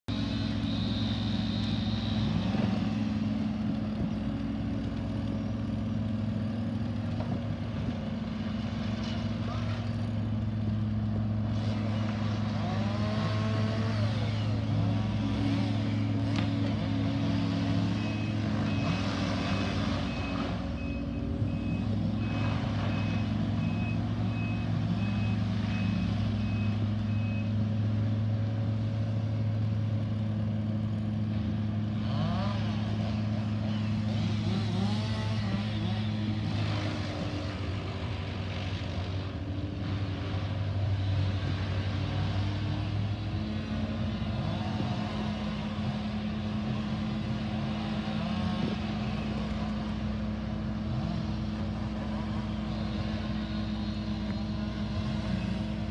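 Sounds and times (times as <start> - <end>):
heavy machine engine running: 0.1 - 55.9
reversing alarm beeping: 17.9 - 27.5.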